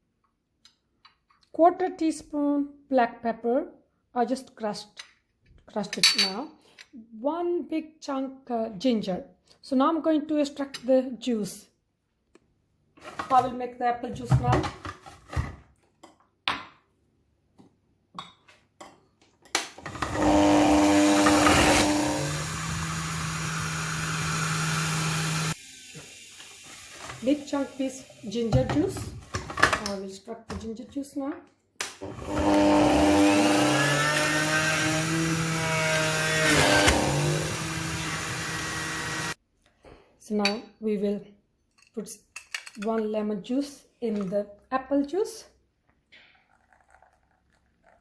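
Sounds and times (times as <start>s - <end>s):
knock of labouring juicer: 19.8s - 22.9s, 32.0s - 34.3s
electric juicer motor whining: 19.8s - 26.8s, 32.0s - 39.4s.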